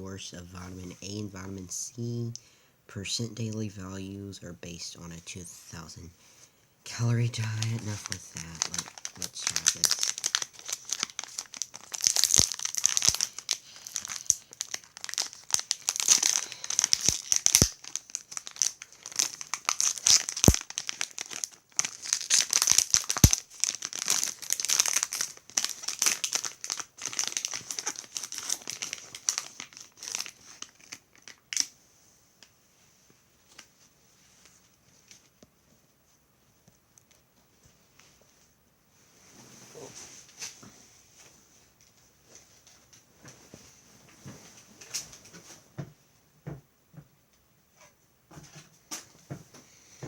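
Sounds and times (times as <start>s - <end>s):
plastic pouch crinkling: 6.9s - 31.7s
plastic pouch tearing: 7.3s - 31.7s.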